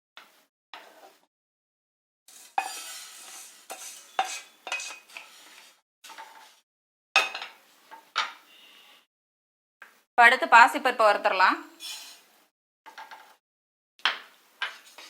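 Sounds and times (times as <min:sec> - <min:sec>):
utensil scraping a pan: 0:02.3 - 0:06.6, 0:11.7 - 0:13.3, 0:14.6 - 0:15.0.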